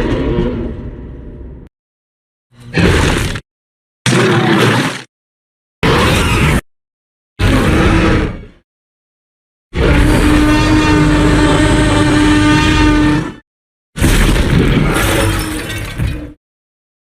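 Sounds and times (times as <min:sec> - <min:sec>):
dinosaur roar: 0:07.4 - 0:08.6, 0:09.8 - 0:13.4.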